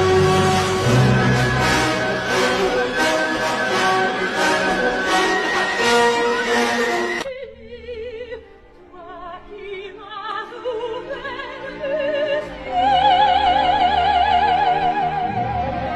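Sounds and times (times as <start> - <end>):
music: 0.0 - 15.9
operatic singing with vibrato: 0.0 - 15.9.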